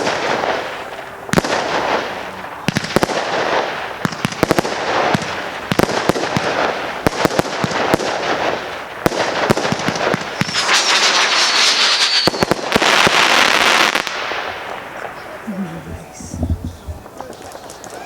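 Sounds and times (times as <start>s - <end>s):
fireworks banging and crackling: 0.0s - 18.0s
firework whistle falling in pitch: 10.4s - 12.7s.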